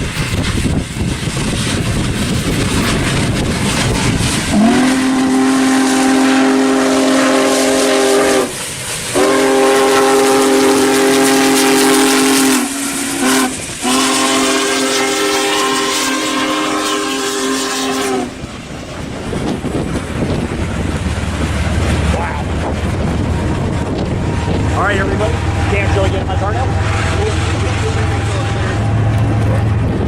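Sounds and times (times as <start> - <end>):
diesel locomotive rumbling: 0.0 - 30.0
locomotive air horn blasts: 4.5 - 18.4, 25.5 - 29.6.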